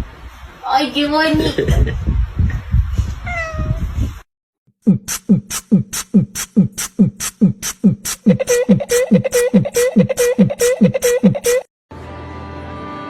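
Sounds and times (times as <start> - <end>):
beatbox kick drum thud: 4.8 - 11.7
hi-hat tick: 5.1 - 8.4.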